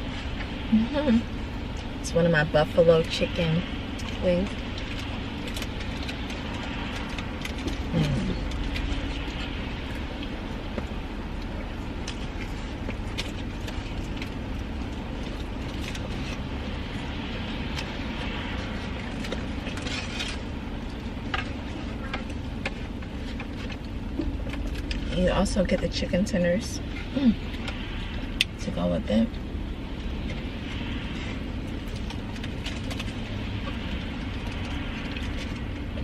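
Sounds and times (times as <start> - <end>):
car engine rumble: 0.0 - 36.0
eating clicks and rustles: 3.9 - 25.2, 30.2 - 36.0.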